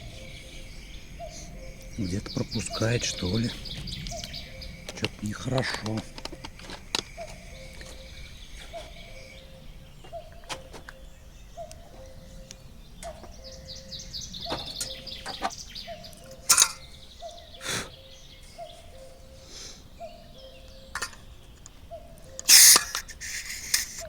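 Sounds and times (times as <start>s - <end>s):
bird warbling trill: 0.0s - 10.6s, 22.3s - 24.0s.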